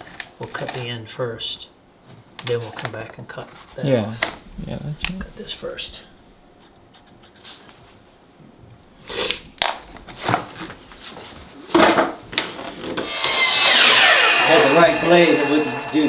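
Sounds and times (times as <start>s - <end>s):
jigsaw cutting: 13.0s - 16.0s.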